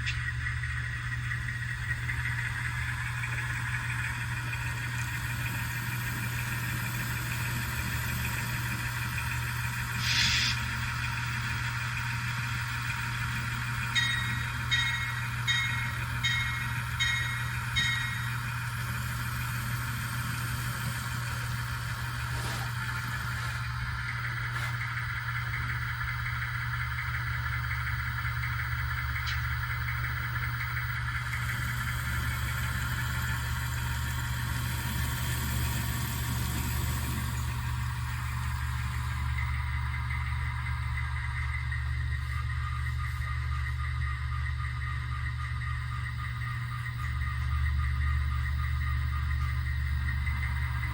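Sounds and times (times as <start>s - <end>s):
diesel engine through small speaker: 0.0s - 50.9s
locomotive bell ringing: 13.7s - 18.9s.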